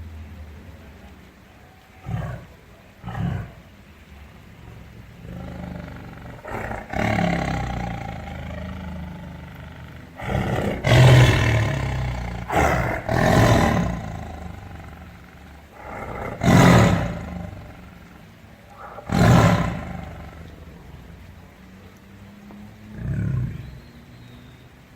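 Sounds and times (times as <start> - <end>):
big cat roaring: 1.9 - 21.2, 22.9 - 23.8.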